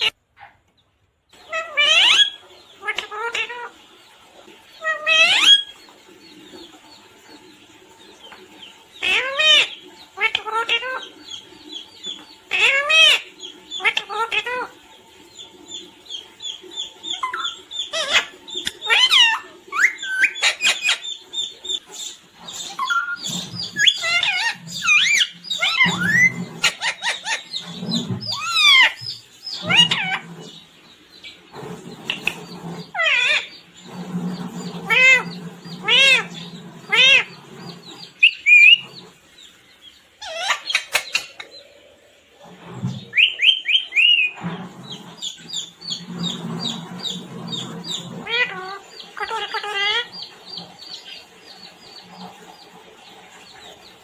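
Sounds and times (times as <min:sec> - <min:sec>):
parrot chirps whistles and squawks: 0:01.4 - 0:03.7, 0:04.8 - 0:05.8, 0:16.9 - 0:30.3, 0:32.0 - 0:33.6, 0:34.6 - 0:39.0, 0:40.2 - 0:41.4, 0:43.0 - 0:50.3.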